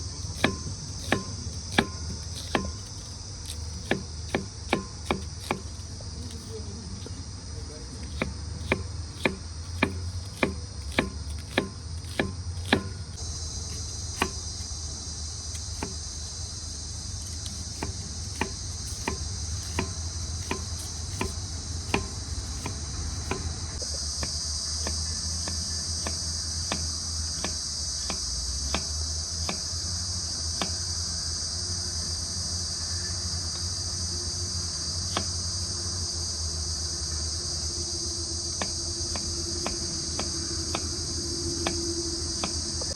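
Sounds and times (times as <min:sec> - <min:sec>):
crickets chirping: 0:00.0 - 0:42.9
sharp knocks: 0:00.3 - 0:02.9, 0:03.8 - 0:05.7, 0:08.2 - 0:13.0, 0:17.8 - 0:23.6.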